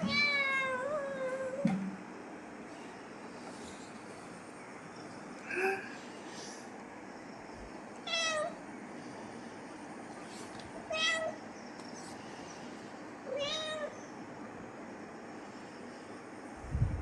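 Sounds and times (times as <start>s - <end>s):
kitten meowing: 8.1s - 8.6s, 10.9s - 11.4s, 13.3s - 13.9s.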